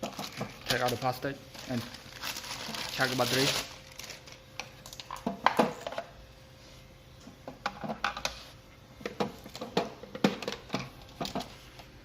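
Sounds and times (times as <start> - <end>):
packaging being removed: 0.1 - 5.1.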